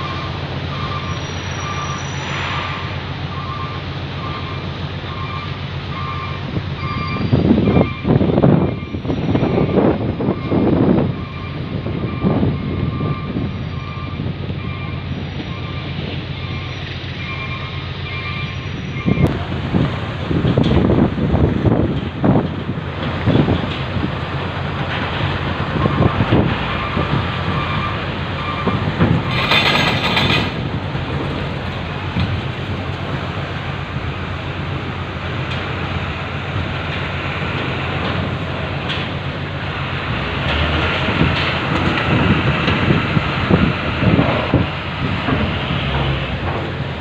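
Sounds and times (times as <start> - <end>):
loud noise burst: 0.0 - 5.4
ferry engines rumbling: 0.0 - 47.0
water noise: 0.0 - 47.0
wind: 0.0 - 47.0.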